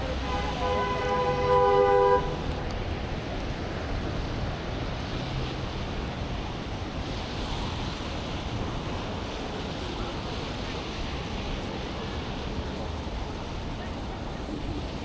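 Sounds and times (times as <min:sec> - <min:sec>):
car horn honking: 0:00.0 - 0:02.5
street noise: 0:00.0 - 0:15.0
wind: 0:00.0 - 0:15.0.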